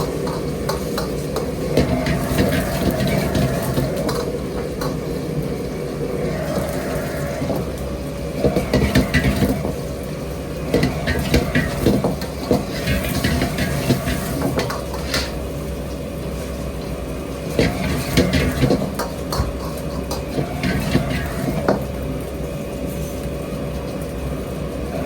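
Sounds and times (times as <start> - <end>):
dishes and utensils clattering: 0.0 - 5.1, 8.4 - 9.9, 10.6 - 15.4, 17.5 - 21.9.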